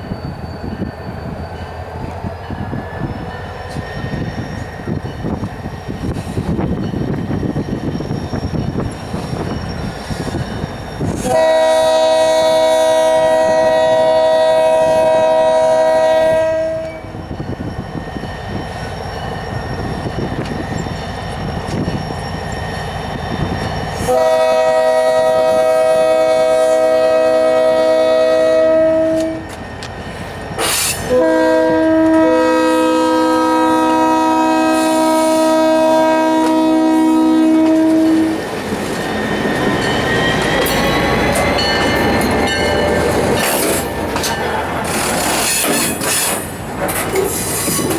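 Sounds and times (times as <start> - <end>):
train rumbling past: 0.0 - 47.9
locomotive air horn blasts: 11.1 - 17.1, 24.0 - 29.5, 30.6 - 38.4
wheels clicking over rail joints: 37.5 - 47.9.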